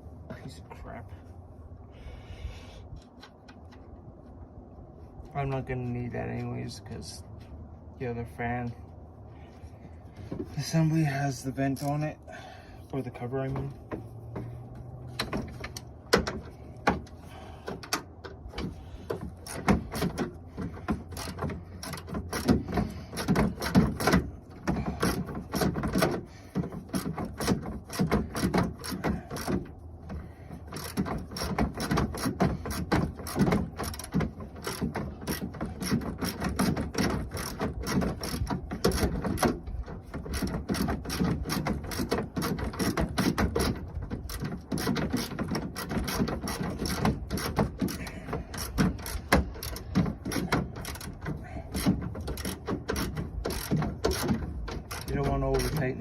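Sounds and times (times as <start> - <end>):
ratchet wrench clicking: 19.3 - 29.6, 30.2 - 55.9.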